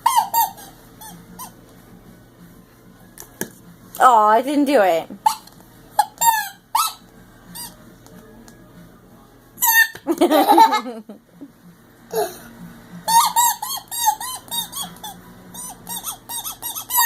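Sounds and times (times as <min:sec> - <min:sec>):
toy horn squeaking: 0:00.0 - 0:01.5, 0:05.3 - 0:07.8, 0:09.6 - 0:10.0, 0:13.1 - 0:17.0
person laughing: 0:10.1 - 0:11.5.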